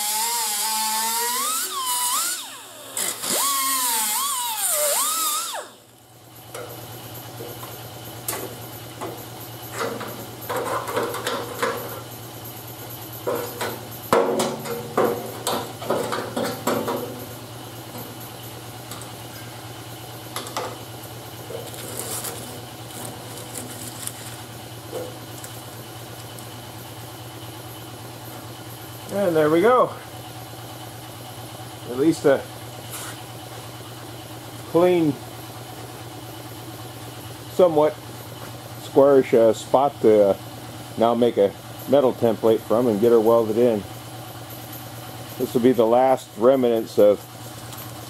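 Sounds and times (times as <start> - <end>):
grinder cutting sheet steel: 0.0 - 5.8
steady low hum: 0.0 - 48.0
knocks and clatter: 13.2 - 17.2.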